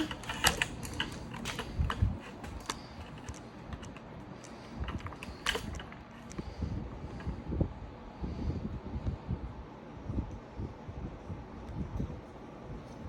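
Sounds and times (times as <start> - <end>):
parts and tools clicking: 0.0 - 6.5.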